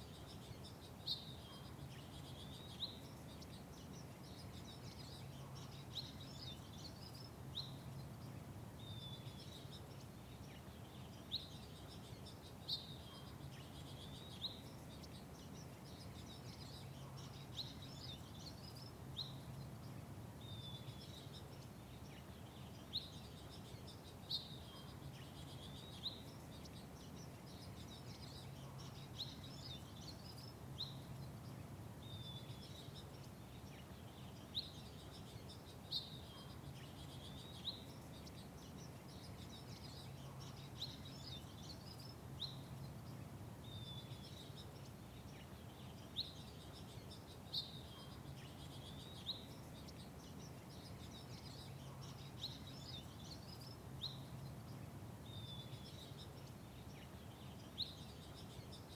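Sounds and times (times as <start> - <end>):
songbirds chirping: 0.0 - 58.9.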